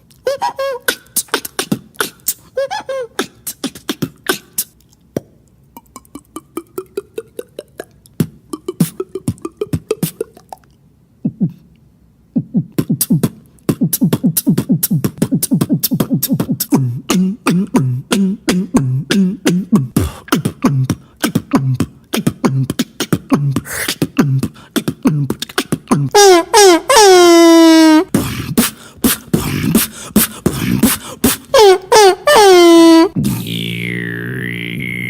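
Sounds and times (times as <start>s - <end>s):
beatboxing clicks and hits: 0.0s - 11.8s, 12.4s - 26.2s, 28.1s - 31.9s, 33.2s - 35.0s
held pitched vocal tone: 5.7s - 11.7s, 12.3s - 35.0s
low vocal bass: 12.4s - 26.1s, 33.2s - 35.0s.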